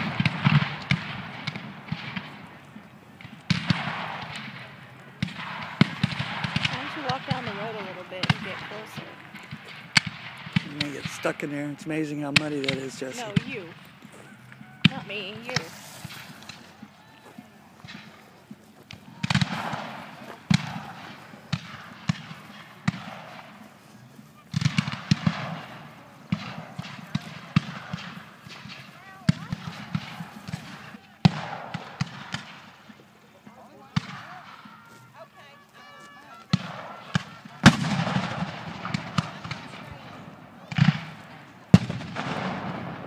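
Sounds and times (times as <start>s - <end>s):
distant gunshots with echo: 0.0s - 43.0s
distant musket shots: 0.0s - 43.0s
musket volley rumble: 0.0s - 43.0s.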